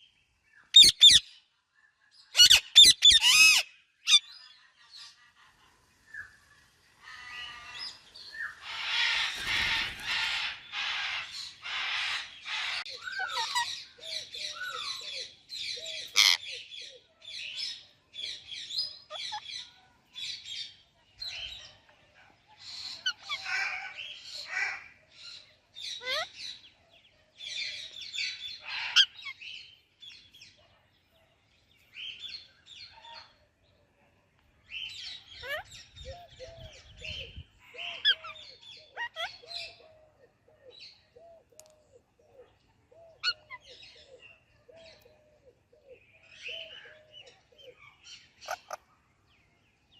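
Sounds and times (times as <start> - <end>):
parrots chirping: 0.7 - 1.2, 2.4 - 4.3, 7.0 - 15.0, 15.7 - 16.4, 26.0 - 26.4, 28.1 - 29.4, 35.4 - 35.7, 39.0 - 39.4, 47.7 - 48.8.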